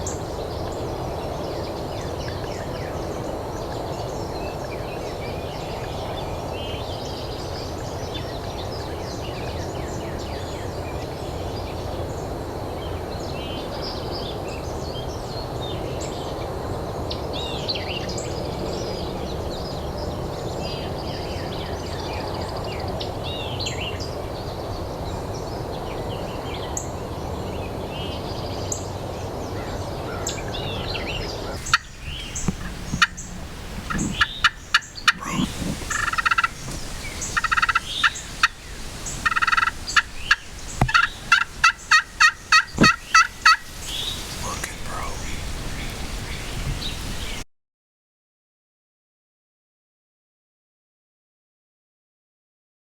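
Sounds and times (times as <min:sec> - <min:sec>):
small birds chirping: 0:29.5 - 0:47.4
turkeys gobbling: 0:31.3 - 0:47.4.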